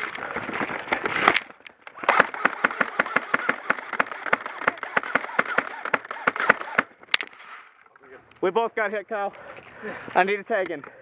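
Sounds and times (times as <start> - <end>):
sharp cracks: 0.0 - 8.0
rustling movement: 0.0 - 8.5
airsoft gun shots: 2.0 - 6.9.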